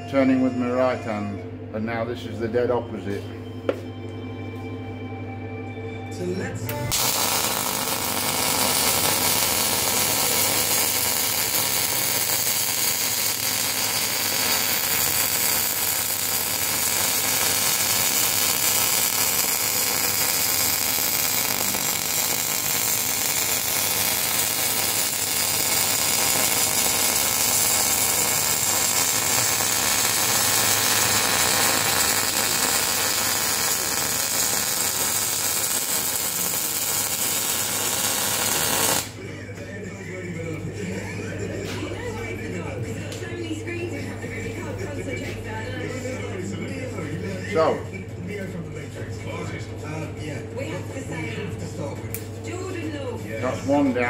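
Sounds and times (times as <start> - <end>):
welding arc hissing: 6.7 - 39.2.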